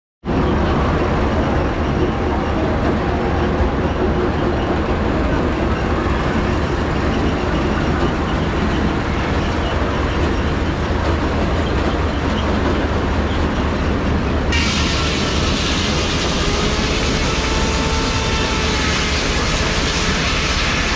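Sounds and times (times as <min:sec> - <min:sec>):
old tractor engine running: 0:00.3 - 0:20.9
steady whine: 0:13.8 - 0:20.9
loud hiss: 0:14.6 - 0:20.9.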